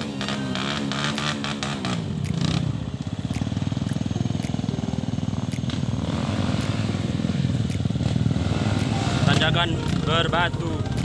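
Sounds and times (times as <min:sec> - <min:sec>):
motorcycle engine running: 0:00.0 - 0:11.0
sharp clicks: 0:03.2 - 0:04.8, 0:05.4 - 0:05.9, 0:08.7 - 0:09.0.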